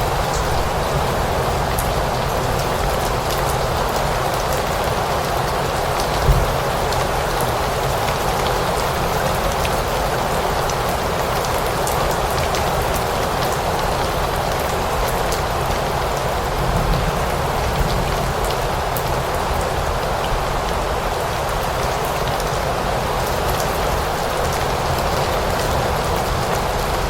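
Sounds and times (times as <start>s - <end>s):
steady rain falling: 0.0s - 27.0s
low thump: 6.2s - 6.7s.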